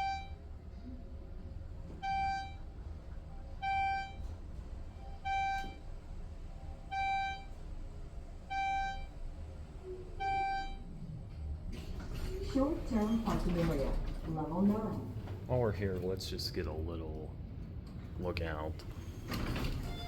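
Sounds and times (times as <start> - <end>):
elevator electronic beep: 0.0 - 0.6, 1.9 - 11.3, 19.4 - 20.0
elevator rumble: 0.0 - 20.0.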